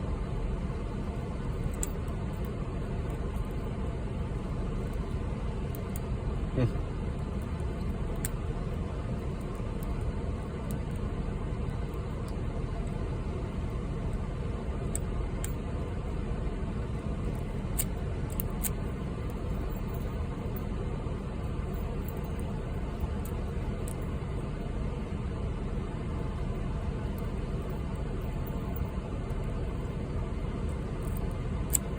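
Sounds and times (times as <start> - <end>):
air conditioner humming: 0.0 - 31.9
lock pick clicking in padlock: 17.7 - 18.8, 31.0 - 31.9.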